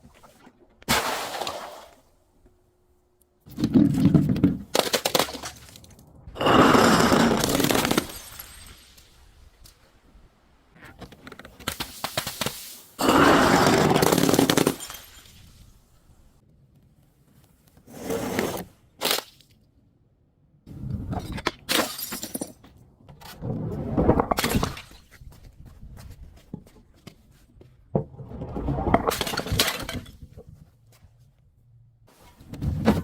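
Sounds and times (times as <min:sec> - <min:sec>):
glass bottles shattering: 0:06.5 - 0:09.1, 0:13.8 - 0:15.6, 0:21.7 - 0:22.6.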